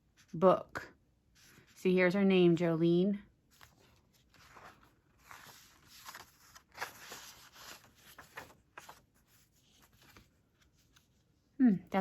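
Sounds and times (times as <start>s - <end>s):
paper rustling: 3.4s - 11.4s.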